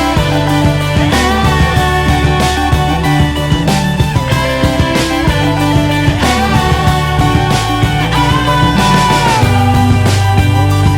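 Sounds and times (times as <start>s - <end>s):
rock music: 0.0s - 10.9s.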